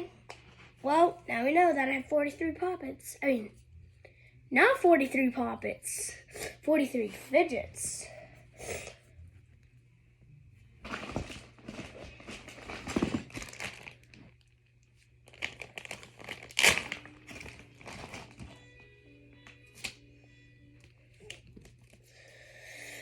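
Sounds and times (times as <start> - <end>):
plastic toys crinkling: 10.8 - 14.5, 15.2 - 18.6.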